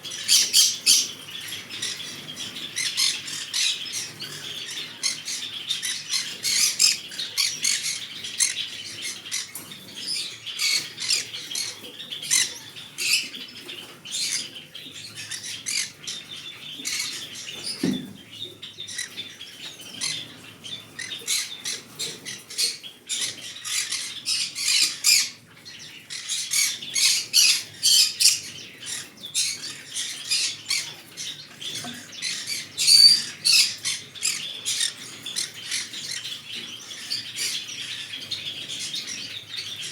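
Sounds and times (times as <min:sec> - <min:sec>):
parrot shrill chirps and squawks: 0:31.7 - 0:36.2.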